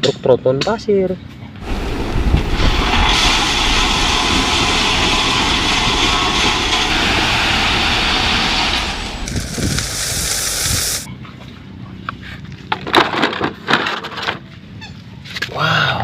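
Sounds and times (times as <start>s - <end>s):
heavy truck engine running: 1.6s - 11.1s.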